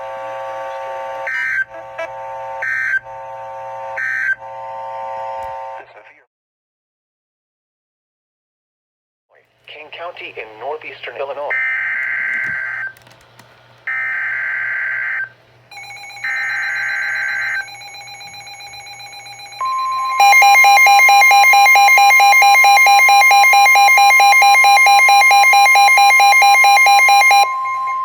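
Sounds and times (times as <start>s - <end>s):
buzzing two-tone attention signal: 0.0s - 5.8s, 15.7s - 28.0s
steady alert tones: 15.7s - 28.0s.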